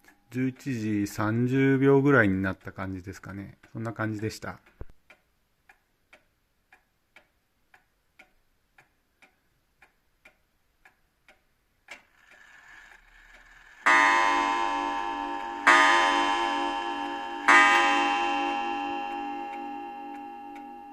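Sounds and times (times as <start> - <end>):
pendulum clock ticking: 0.0 - 20.9
clock mechanism click and whirr: 7.7 - 18.2
clock bell striking: 13.8 - 20.9.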